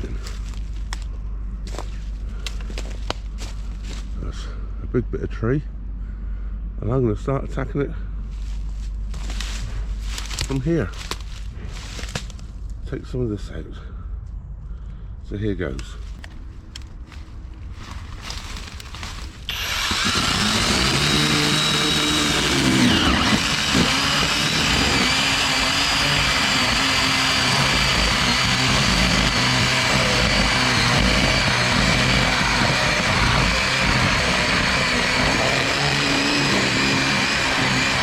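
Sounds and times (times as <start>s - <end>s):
electric chainsaw cutting tree: 17.8s - 38.0s.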